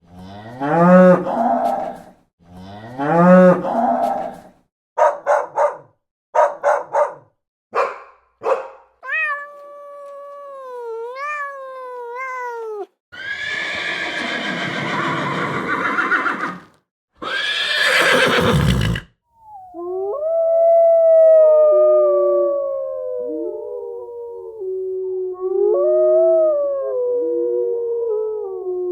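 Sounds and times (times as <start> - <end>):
loud rough animal calls: 17.2 - 19.1.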